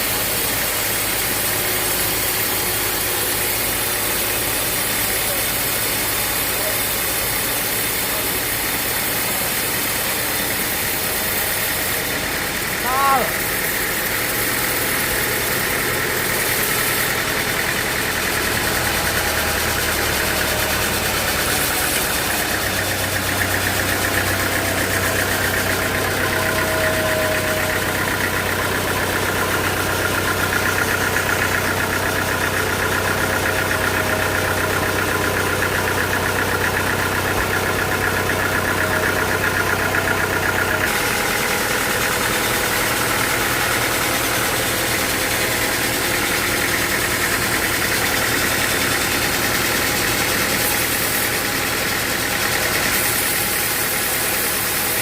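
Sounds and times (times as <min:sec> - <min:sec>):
sawmill machinery humming: 0:00.0 - 0:55.0.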